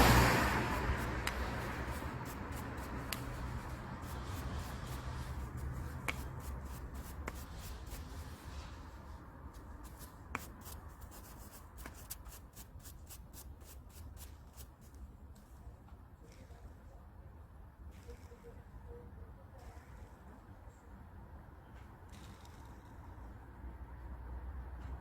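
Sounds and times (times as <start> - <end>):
wire brush scrubbing metal: 0.0 - 8.8, 9.6 - 14.8.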